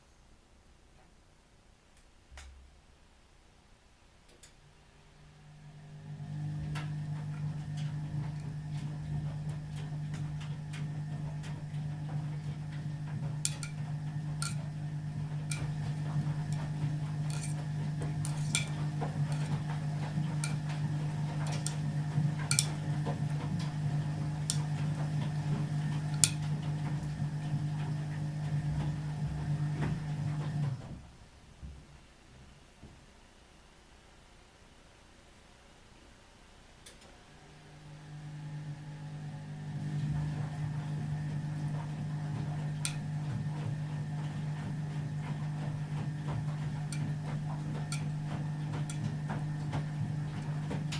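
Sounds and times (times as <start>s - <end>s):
drain pump humming: 5.2s - 31.8s, 37.1s - 50.9s.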